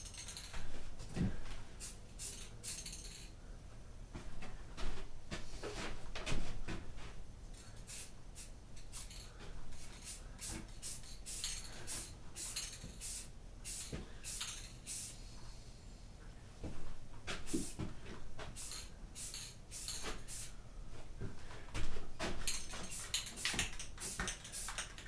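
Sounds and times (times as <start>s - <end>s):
spray paint can hissing: 1.8s - 3.2s, 7.6s - 15.4s, 17.5s - 17.8s, 18.5s - 20.5s, 22.5s - 25.0s.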